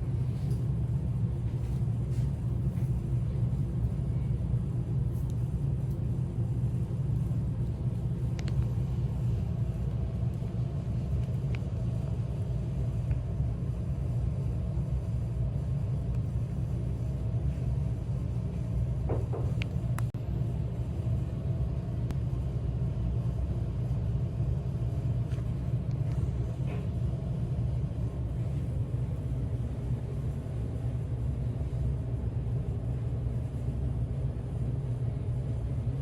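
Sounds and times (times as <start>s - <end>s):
car cabin low rumble: 0.0s - 14.1s.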